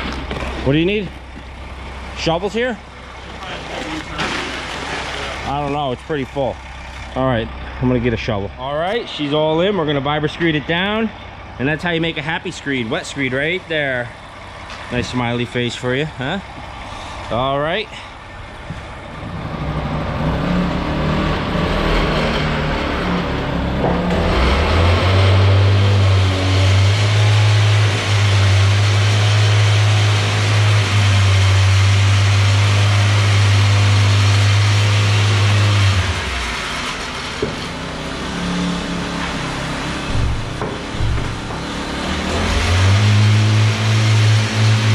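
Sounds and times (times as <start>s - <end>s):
deep steady hum: 0.0s - 44.9s
small gas engine running: 9.6s - 44.9s.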